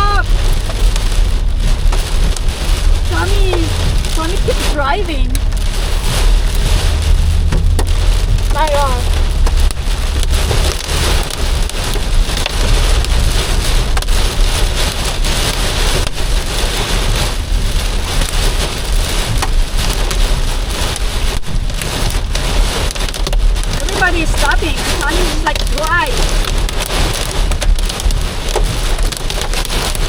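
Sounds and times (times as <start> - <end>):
low rumble: 0.0 - 22.8
heavy rain beating on a car: 0.0 - 30.0.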